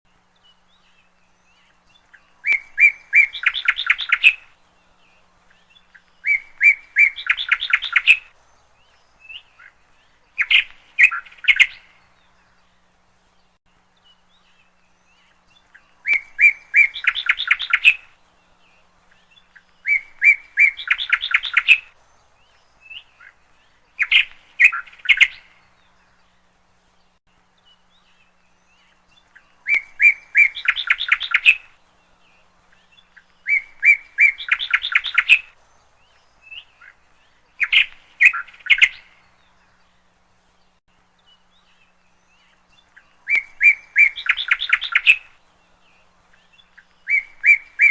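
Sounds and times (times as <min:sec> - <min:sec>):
woodpecker rapid chirping: 0:02.4 - 0:04.4, 0:06.2 - 0:08.3, 0:16.0 - 0:18.1, 0:19.6 - 0:22.0, 0:24.0 - 0:25.4, 0:29.6 - 0:31.7, 0:33.2 - 0:35.6, 0:43.3 - 0:45.3.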